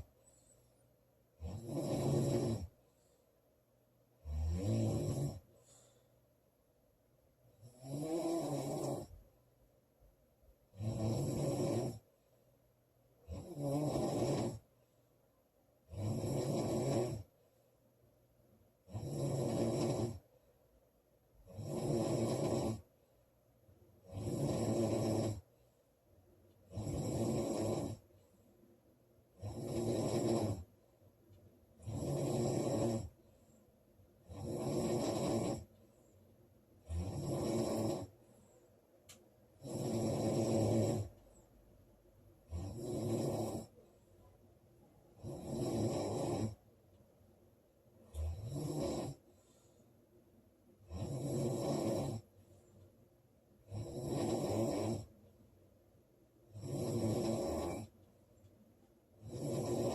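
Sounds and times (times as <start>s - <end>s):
woman snoring loudly: 1.4s - 2.7s, 4.2s - 5.4s, 7.6s - 9.2s, 10.7s - 12.0s, 13.3s - 14.6s, 15.9s - 17.3s, 18.8s - 20.2s, 21.5s - 22.9s, 24.0s - 25.4s, 26.7s - 28.0s, 29.4s - 30.7s, 31.8s - 33.2s, 34.3s - 35.7s, 36.8s - 38.2s, 39.6s - 41.1s, 42.5s - 43.8s, 45.2s - 46.6s, 48.1s - 49.2s, 50.8s - 52.2s, 53.7s - 55.1s, 56.5s - 57.9s, 59.2s - 59.9s.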